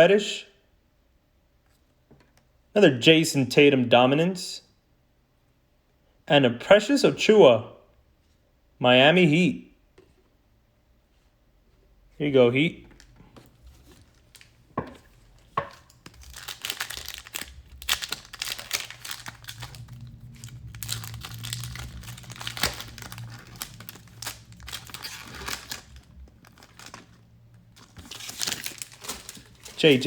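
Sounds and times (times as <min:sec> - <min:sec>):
card pack wrapper crinkling and tearing: 0:13.0 - 0:30.0.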